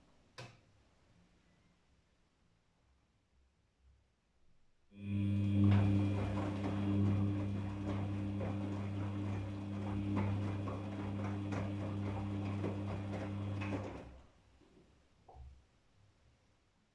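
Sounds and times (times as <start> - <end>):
washing machine humming and rattling: 5.0 - 14.3.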